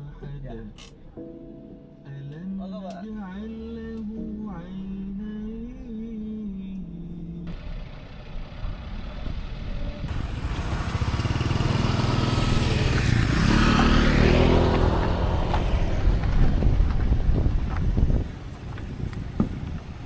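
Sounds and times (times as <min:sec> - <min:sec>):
motor vehicle engine running: 0:06.6 - 0:20.0.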